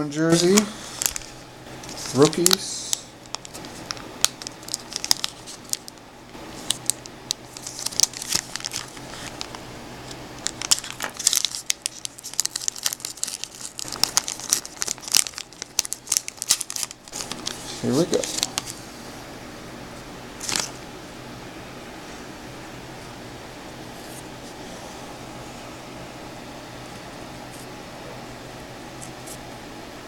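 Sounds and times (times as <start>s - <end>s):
wrapper tearing and crinkling: 0.3s - 9.6s, 10.4s - 18.8s, 20.4s - 20.8s.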